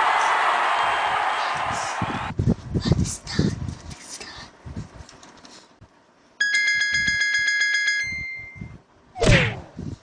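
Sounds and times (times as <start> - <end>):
electronic chime: 6.4 - 8.8.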